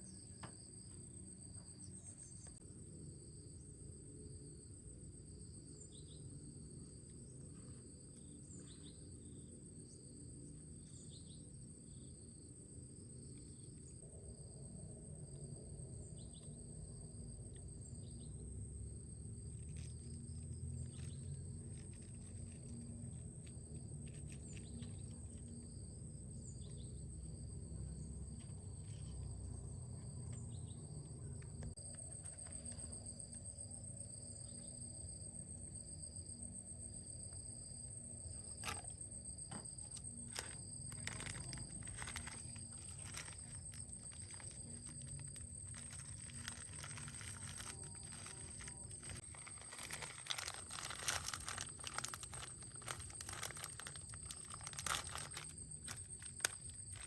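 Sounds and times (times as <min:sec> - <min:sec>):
insects trilling: 0:00.0 - 0:57.0
low outdoor rumble: 0:39.8 - 0:57.0.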